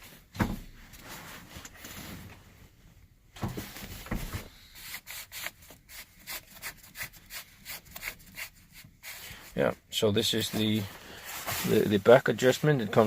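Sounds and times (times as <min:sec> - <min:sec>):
plastic parts rubbing and scraping: 0:10.3 - 0:13.0.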